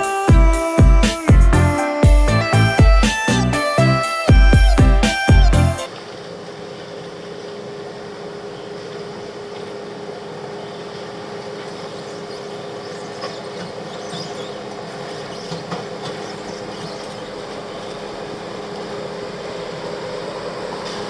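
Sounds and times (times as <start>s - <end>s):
vehicle engine running: 0.0s - 5.8s.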